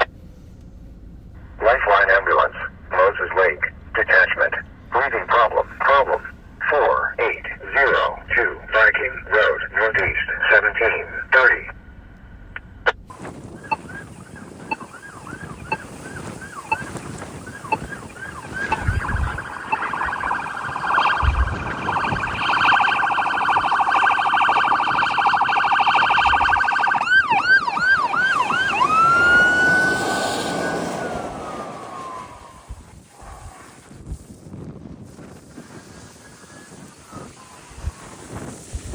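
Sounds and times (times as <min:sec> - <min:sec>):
emergency vehicle siren: 0:13.1 - 0:33.7, 0:35.6 - 0:38.5.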